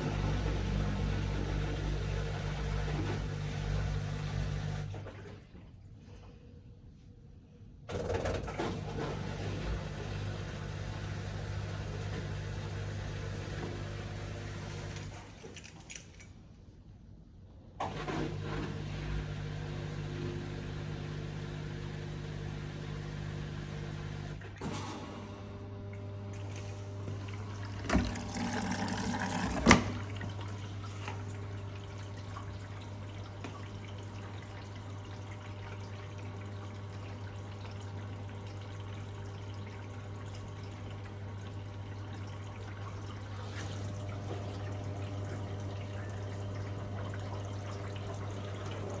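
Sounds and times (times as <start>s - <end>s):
washing machine click: 26.4s - 30.5s
water rushing in: 26.4s - 37.5s.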